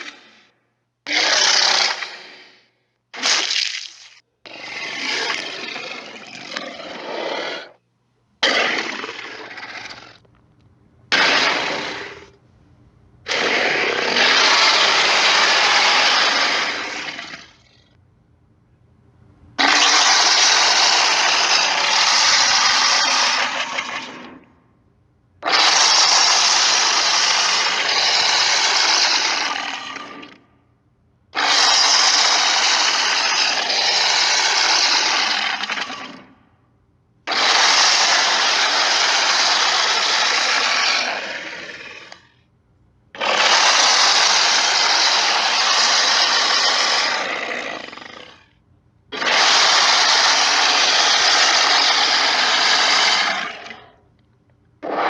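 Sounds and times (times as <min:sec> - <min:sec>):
dinosaur roars: 0:01.1 - 0:02.6, 0:04.5 - 0:07.8, 0:08.4 - 0:10.2, 0:11.1 - 0:12.4, 0:13.3 - 0:17.9, 0:19.6 - 0:24.5, 0:25.4 - 0:30.5, 0:31.4 - 0:36.4, 0:37.3 - 0:42.3, 0:43.2 - 0:54.0.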